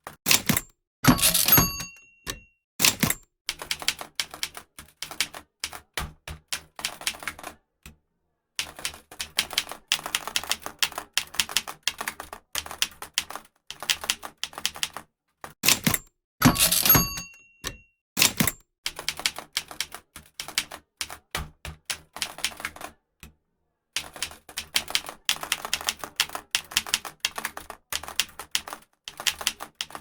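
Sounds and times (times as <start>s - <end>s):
typewriter carriage bell ding: 0.3s - 3.2s, 15.7s - 18.6s
typewriter keys clacking: 0.3s - 7.4s, 15.6s - 22.9s, 24.0s - 30.0s.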